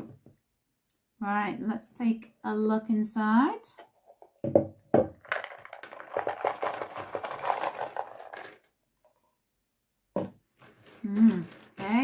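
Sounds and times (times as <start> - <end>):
knock: 4.4 - 5.1
puzzle pieces clicking and rustling: 5.2 - 8.8, 10.2 - 12.0.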